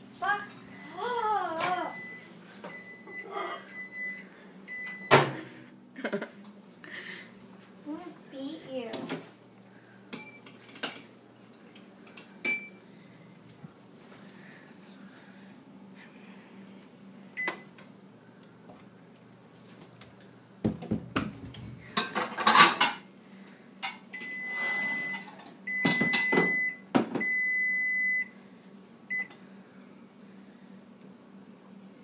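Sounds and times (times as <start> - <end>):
appliance beeping: 0.6 - 5.5, 17.4 - 17.8, 24.1 - 28.4, 29.1 - 29.4.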